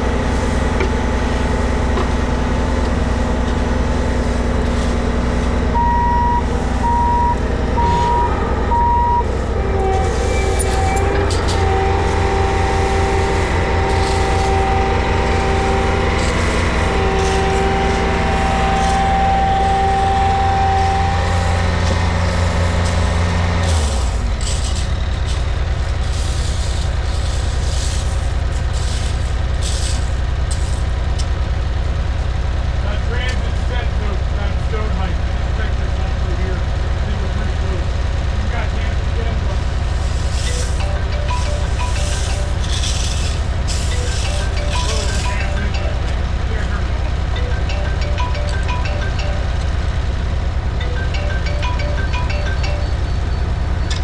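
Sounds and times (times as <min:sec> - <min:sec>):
heavy equipment engine running: 0:00.0 - 0:54.0
backup alarm beeping: 0:05.7 - 0:22.1, 0:40.5 - 0:42.8, 0:43.8 - 0:54.0
steady alarm tone: 0:05.7 - 0:24.0, 0:39.7 - 0:54.0.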